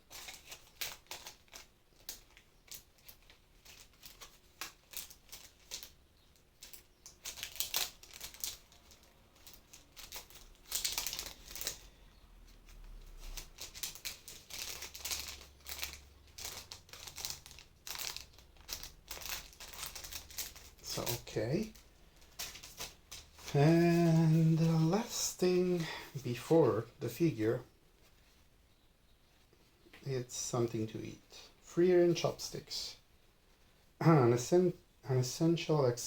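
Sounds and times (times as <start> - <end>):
plastic packaging crinkling: 0.0 - 26.5.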